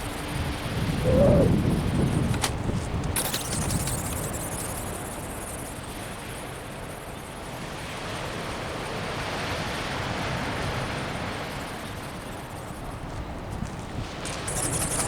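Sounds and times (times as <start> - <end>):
wind rushing over microphone: 0.0 - 3.9.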